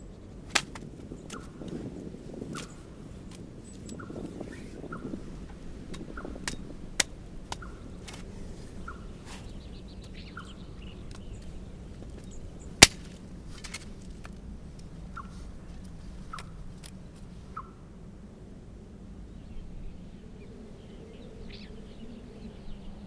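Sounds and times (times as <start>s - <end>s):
campfire crackling: 0.4s - 15.0s.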